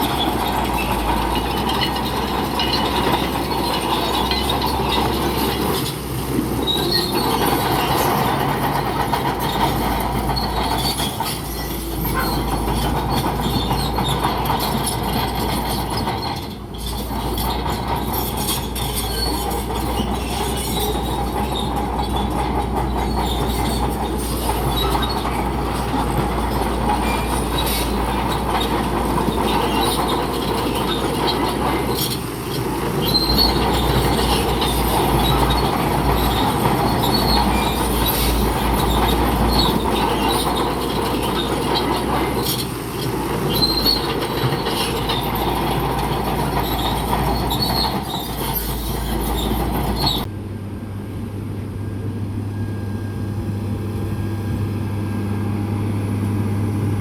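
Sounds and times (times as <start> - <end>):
steel tracks squealing and clanking: 0.0 - 50.3
bulldozer diesel engine droning: 0.0 - 57.0
high-pitched squeaks: 6.6 - 32.2, 33.0 - 50.3.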